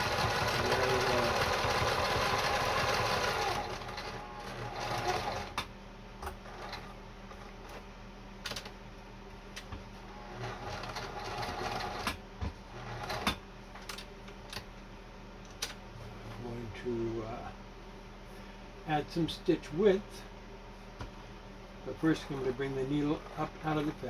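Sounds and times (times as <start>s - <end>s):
sewing machine sewing: 0.0s - 5.6s, 10.2s - 13.4s.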